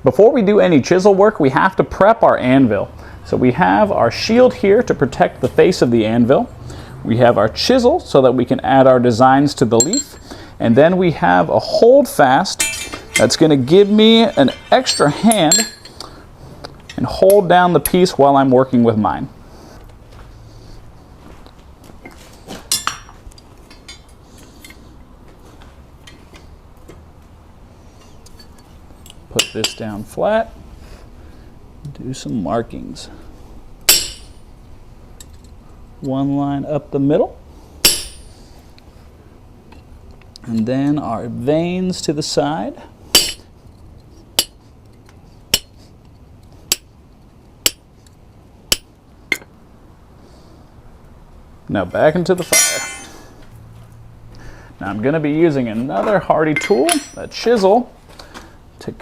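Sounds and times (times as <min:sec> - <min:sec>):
ringing metal clank: 0:09.8 - 0:10.2, 0:12.5 - 0:16.0, 0:22.7 - 0:23.2, 0:33.9 - 0:34.4, 0:37.8 - 0:38.4, 0:43.2 - 0:43.5, 0:52.4 - 0:53.3, 0:56.5 - 0:57.4
metal tools clinking on anvil: 0:09.8 - 0:10.3, 0:12.4 - 0:16.0, 0:22.7 - 0:24.8, 0:28.4 - 0:29.9, 0:33.9 - 0:34.4, 0:37.8 - 0:38.3, 0:43.2 - 0:43.5, 0:52.4 - 0:53.3, 0:56.5 - 0:57.6
hammer striking chisel on metal: 0:12.6 - 0:15.9, 0:33.9 - 0:34.4, 0:37.8 - 0:38.3, 0:43.2 - 0:43.5, 0:45.5 - 0:45.8, 0:48.7 - 0:49.5, 0:52.5 - 0:53.2, 0:56.6 - 0:57.4.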